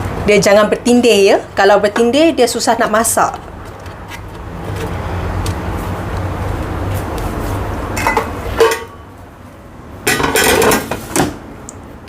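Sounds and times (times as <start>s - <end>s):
kitchenware clinks: 8.0s - 9.0s.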